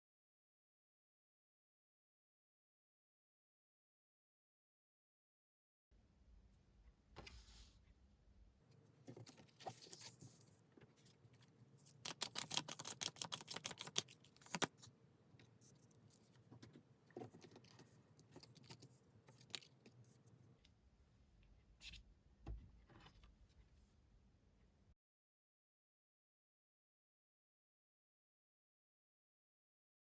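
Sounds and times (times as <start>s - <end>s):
cards clicking: 11.9s - 14.8s
cards tapping and rustling: 11.9s - 14.9s.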